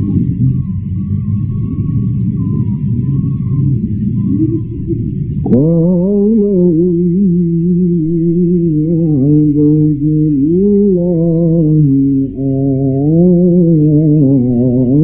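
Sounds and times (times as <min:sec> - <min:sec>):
man chanting melismatic recitation: 0:05.5 - 0:15.0.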